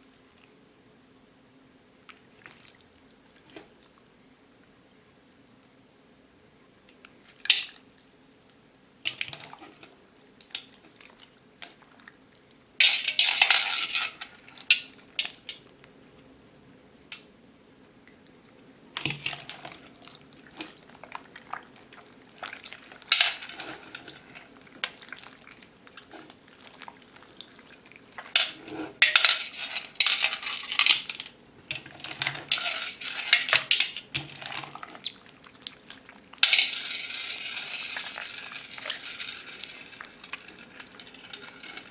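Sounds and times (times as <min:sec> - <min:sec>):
plastic beads clattering in container: 0:12.8 - 0:14.3, 0:22.7 - 0:24.5, 0:28.3 - 0:35.0, 0:36.4 - 0:41.9.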